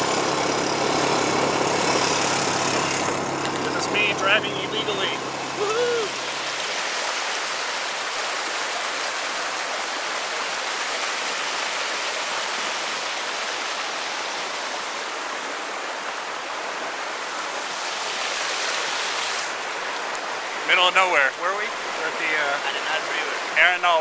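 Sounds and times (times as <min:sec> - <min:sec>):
river water rushing: 0:00.0 - 0:24.0.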